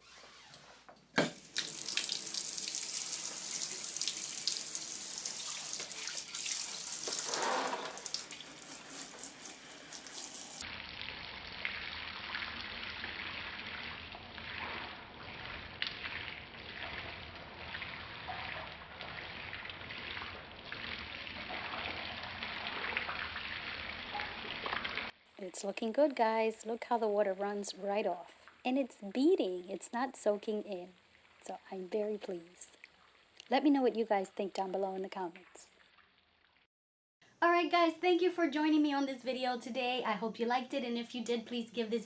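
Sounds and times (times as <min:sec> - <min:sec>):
water running and splashing: 0:01.2 - 0:10.7
water spattering crackles: 0:01.3 - 0:36.7.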